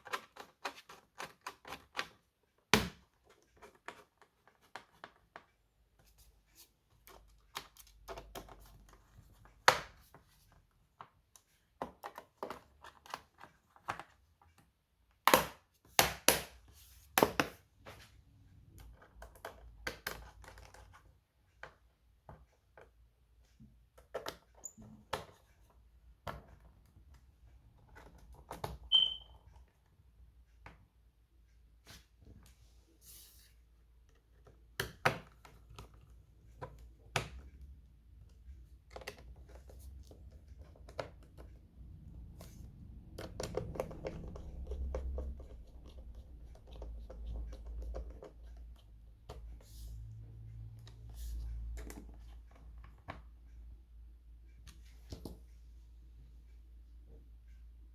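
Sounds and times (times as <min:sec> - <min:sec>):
clicks and knocks of laptop parts: 0:15.2 - 0:17.7
brief high tone: 0:28.9 - 0:29.3.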